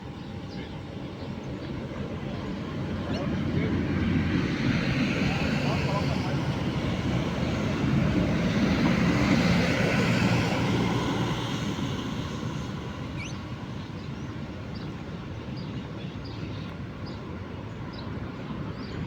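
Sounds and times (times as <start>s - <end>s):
faint bird chirps: 13.2s - 13.4s.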